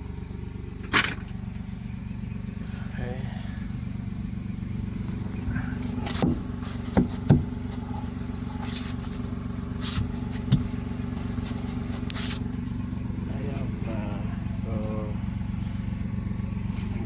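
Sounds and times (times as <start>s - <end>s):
car engine idling: 0.0s - 17.0s
sharp engine clinks: 0.2s - 2.7s.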